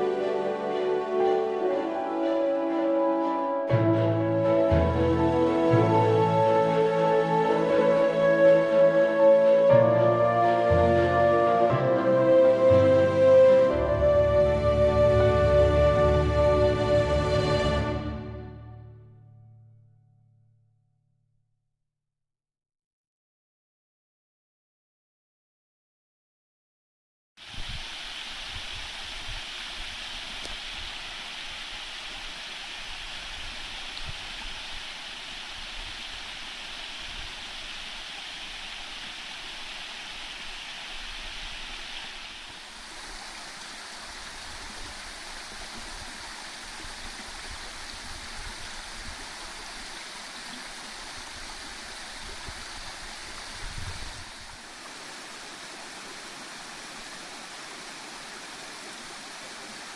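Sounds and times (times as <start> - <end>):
waterfall splashing: 3.7 - 8.9, 27.4 - 59.9.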